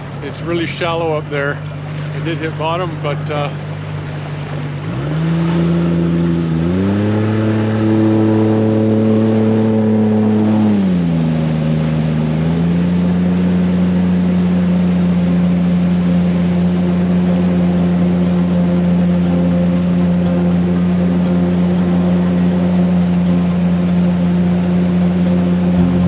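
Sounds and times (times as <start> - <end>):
outboard jet motor revving: 12.0 - 26.0.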